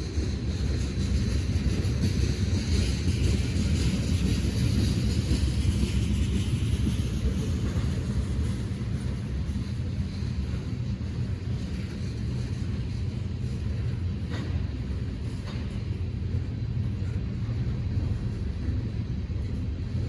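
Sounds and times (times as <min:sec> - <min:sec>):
train rumbling: 0:00.0 - 0:20.0.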